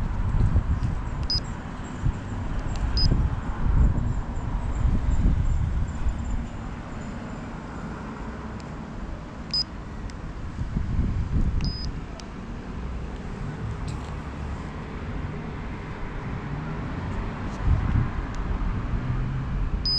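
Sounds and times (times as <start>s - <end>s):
steady low rumble: 0.0s - 7.1s, 8.3s - 19.9s
speedometer beeping: 1.2s - 1.5s, 9.5s - 9.7s, 11.6s - 12.0s.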